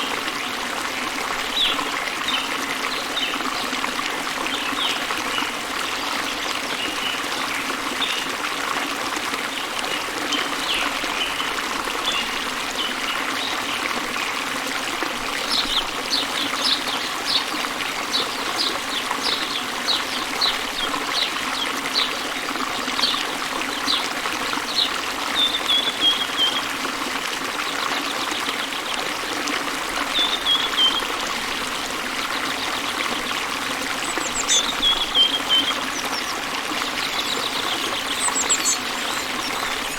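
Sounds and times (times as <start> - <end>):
stream trickling: 0.0 - 39.9
songbirds chirping: 30.0 - 39.9.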